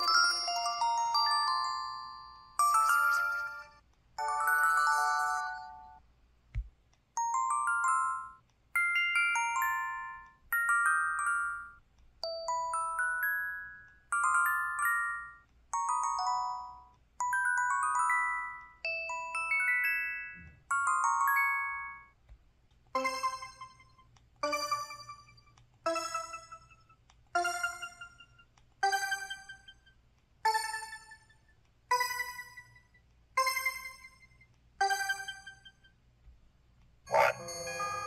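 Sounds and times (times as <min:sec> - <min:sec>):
bell-like struck tone: 0:37.1 - 0:38.0
chiming alert tones: 0:37.1 - 0:38.0.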